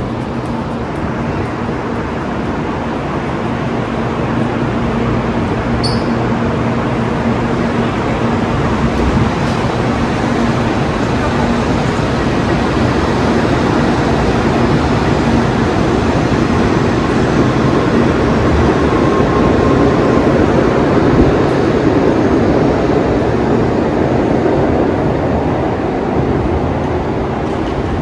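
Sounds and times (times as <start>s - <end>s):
train running rumble: 0.0s - 28.0s.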